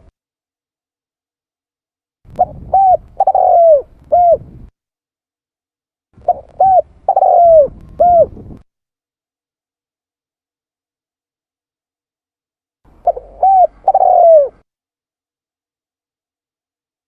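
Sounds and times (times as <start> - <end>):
dove cooing: 2.3 - 4.7, 6.2 - 8.6, 13.0 - 14.6.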